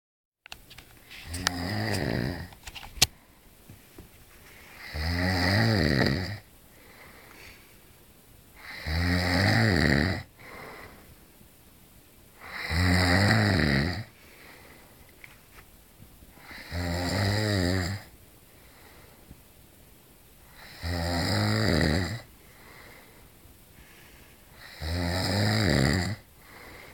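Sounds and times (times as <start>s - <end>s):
man snoring: 1.3s - 2.5s, 4.8s - 7.0s, 8.6s - 10.9s, 12.4s - 14.1s, 16.4s - 18.1s, 20.5s - 22.9s, 24.5s - 26.9s.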